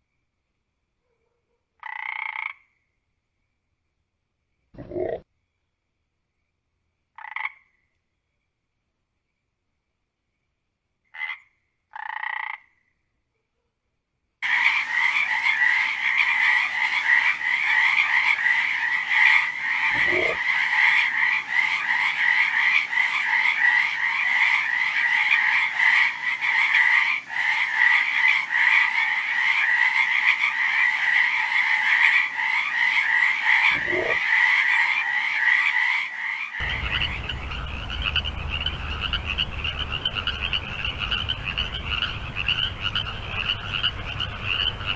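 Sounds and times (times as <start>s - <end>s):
frog chorus trilling: 1.8s - 2.7s, 7.2s - 7.8s, 14.4s - 44.9s
frog croaks: 1.8s - 2.9s, 4.8s - 5.3s, 7.2s - 7.9s, 11.1s - 12.9s, 14.4s - 44.9s
deep sliding frog call: 4.8s - 5.2s, 14.4s - 44.9s
low rumble: 36.6s - 44.9s.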